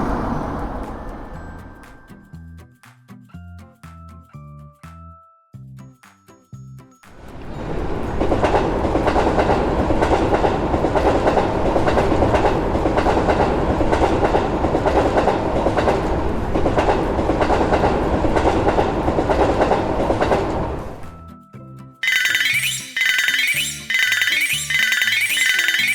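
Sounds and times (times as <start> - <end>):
train passing: 0.0 - 2.1, 7.4 - 21.1, 22.0 - 25.9
wheels clacking over rail joints: 8.1 - 21.0
short melody notes: 22.0 - 25.9.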